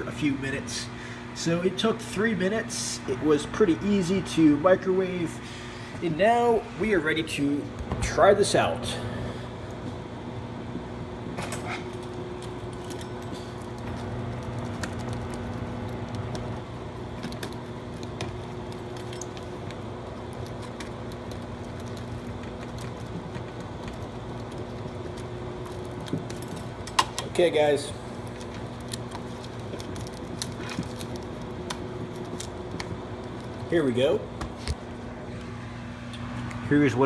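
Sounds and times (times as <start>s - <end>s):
small clicks and rattles: 11.6s - 27.4s, 28.2s - 33.7s.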